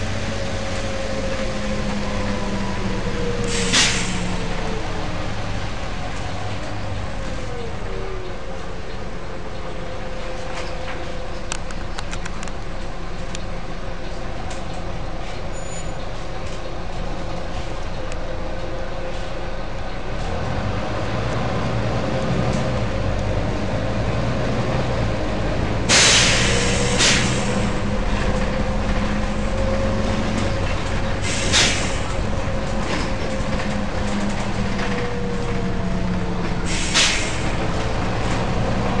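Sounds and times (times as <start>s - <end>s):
bus diesel engine running: 0.0s - 39.0s
compressed air hiss: 3.5s - 4.3s, 25.9s - 27.7s, 31.2s - 32.1s, 36.7s - 37.5s.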